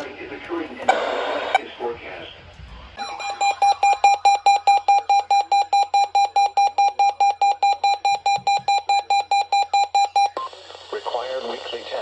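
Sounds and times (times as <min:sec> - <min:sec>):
high-pitched electronic beeping: 0:03.0 - 0:10.4.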